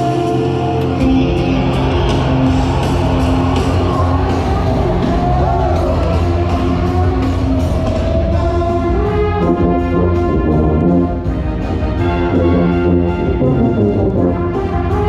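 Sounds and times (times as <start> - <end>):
low tuba line: 0.0 - 15.0
winds ensemble playing: 0.0 - 15.0
percussion hits: 0.9 - 9.9.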